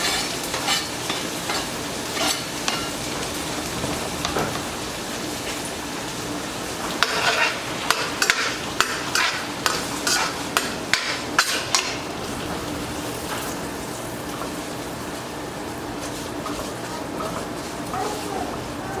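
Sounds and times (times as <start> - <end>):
utensil scraping a pan: 0.0 - 3.0, 7.0 - 12.0
rice sizzling in oil: 0.0 - 19.0.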